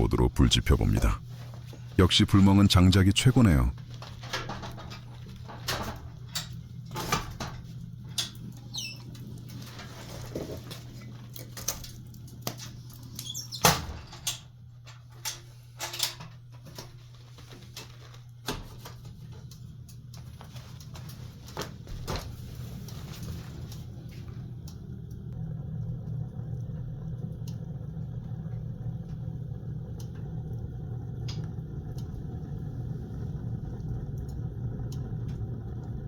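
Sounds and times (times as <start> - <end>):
low hum: 0.0 - 3.9, 22.5 - 36.0
firewood crackling and popping: 3.7 - 15.4, 16.3 - 36.0.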